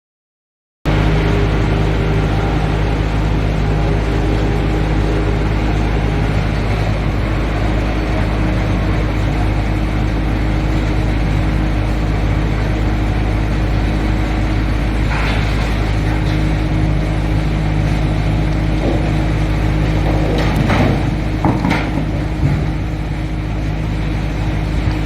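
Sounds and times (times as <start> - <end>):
wood chipper running: 0.9 - 25.0.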